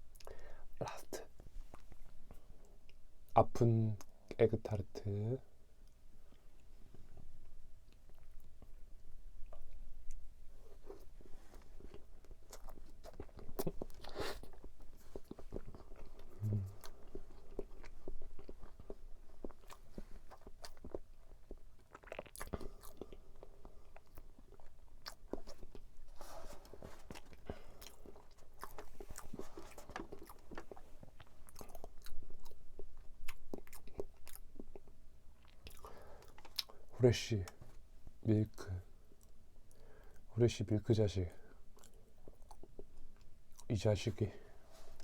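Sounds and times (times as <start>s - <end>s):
chewing crunchy pastry: 5.8s - 37.8s, 41.2s - 45.0s.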